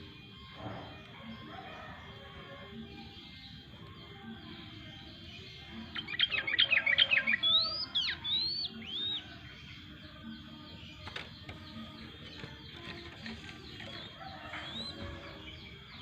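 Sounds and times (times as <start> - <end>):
bird whistled notes: 6.0 - 9.2.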